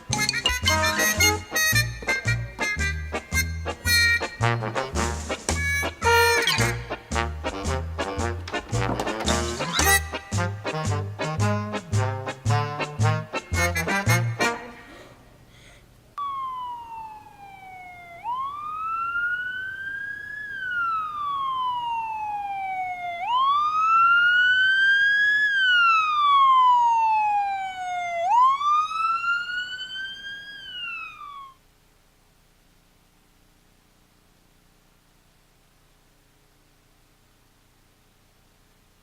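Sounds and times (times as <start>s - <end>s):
siren wailing: 16.2s - 31.6s.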